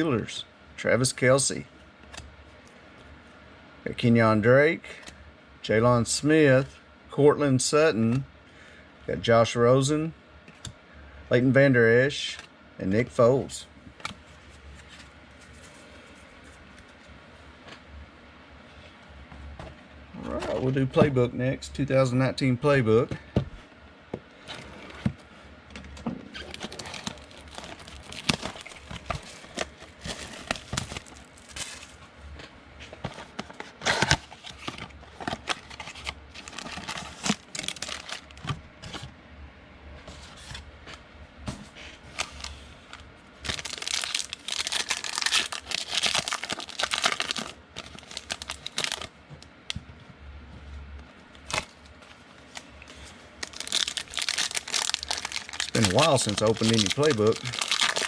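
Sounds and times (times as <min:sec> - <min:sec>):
foil wrappers crinkling and tearing: 0:26.4 - 0:32.0, 0:33.0 - 0:38.4, 0:43.4 - 0:49.1, 0:51.4 - 0:51.8, 0:52.5 - 0:58.0.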